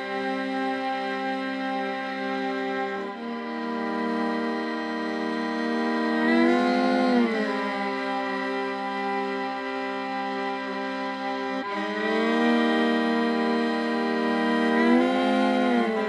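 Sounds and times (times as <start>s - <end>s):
slow sad background music: 3.2s - 16.0s.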